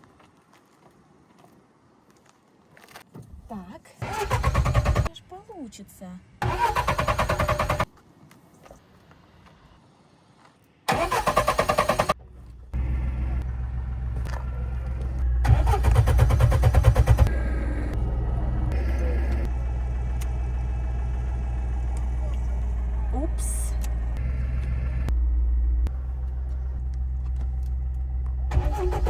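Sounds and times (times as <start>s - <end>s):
car starter cranking: 4.0s - 5.1s, 6.4s - 7.9s, 10.9s - 12.3s, 15.4s - 17.3s, 28.5s - 29.0s
car engine running: 10.9s - 29.0s.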